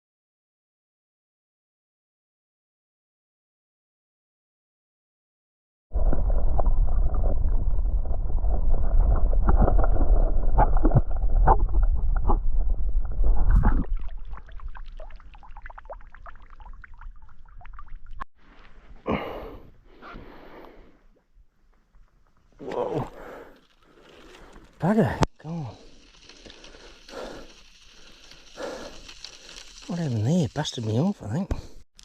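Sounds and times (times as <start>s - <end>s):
faint ticks and rustles: 21.7s - 31.8s.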